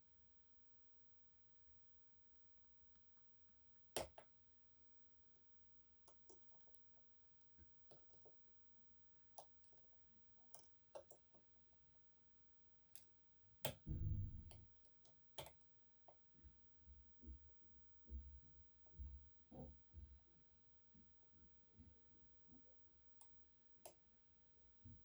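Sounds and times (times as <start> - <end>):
dull handling knock: 13.9 - 14.6.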